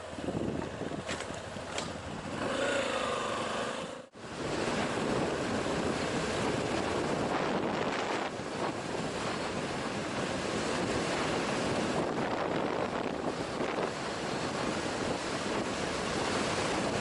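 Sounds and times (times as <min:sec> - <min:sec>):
motorcycle engine: 0:00.0 - 0:10.2
wind rushing over microphone: 0:00.0 - 0:17.0.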